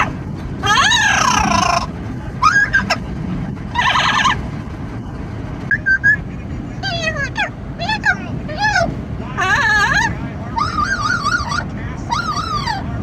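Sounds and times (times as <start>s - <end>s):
car road and wind rumble: 0.0s - 13.0s
parrot squawking: 5.7s - 13.0s.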